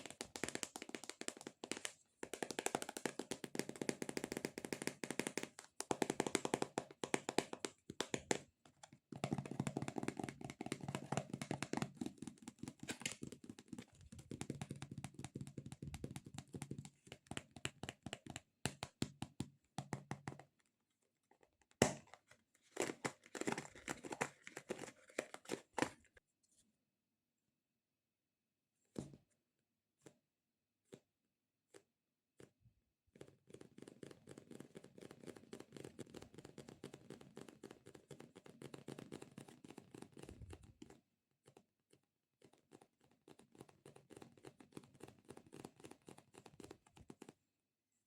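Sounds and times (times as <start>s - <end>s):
fingertips tapping squishy toys: 0.0s - 20.7s.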